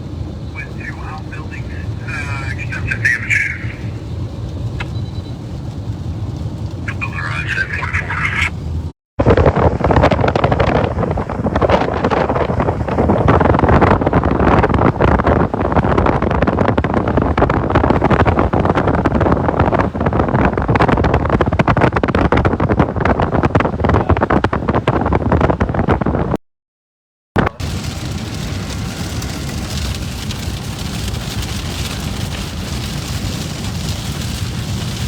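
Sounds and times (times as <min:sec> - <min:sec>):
wind buffeting microphone: 0:08.5 - 0:26.4, 0:27.6 - 0:35.0.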